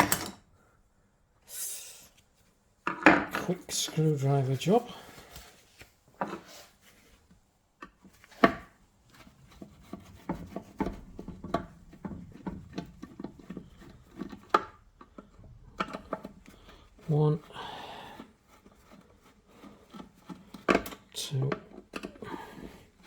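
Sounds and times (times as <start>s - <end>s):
screwdriver clicking and scraping: 18.2s - 23.0s.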